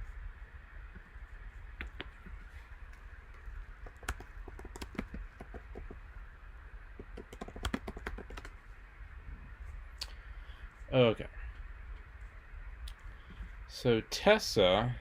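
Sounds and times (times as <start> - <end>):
typing on a keyboard: 3.8 - 6.0, 7.0 - 8.6.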